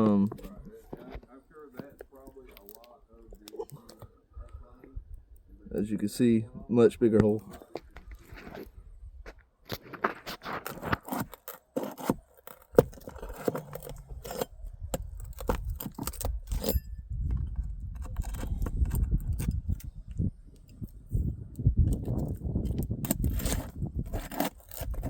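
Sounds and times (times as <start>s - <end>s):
metal tool scraping shingles: 9.9s - 17.0s, 22.0s - 25.0s.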